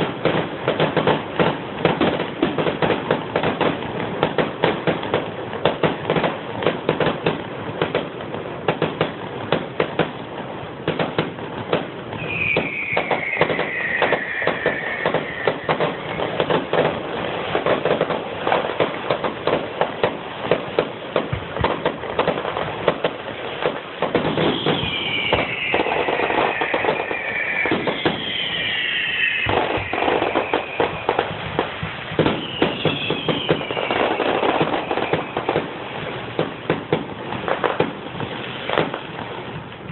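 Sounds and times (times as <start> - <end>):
fireworks crackling and popping: 0.0 - 39.9
falling firework whistles: 11.1 - 20.9, 22.9 - 39.0.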